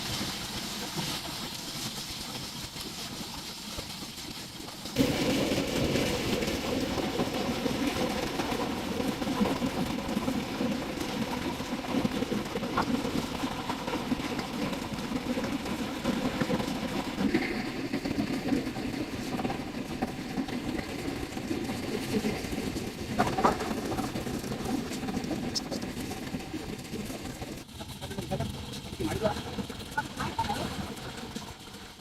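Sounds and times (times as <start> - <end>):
small engine rattling drone: 0.0 - 32.0.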